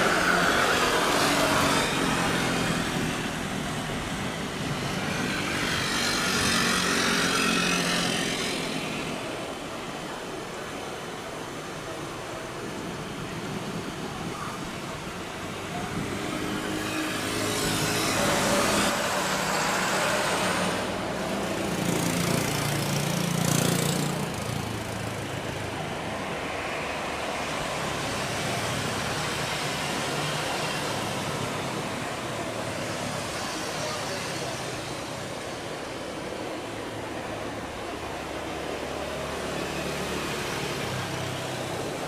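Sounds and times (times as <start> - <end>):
traffic hum: 0.0 - 42.0
vehicles passing by: 0.0 - 42.0.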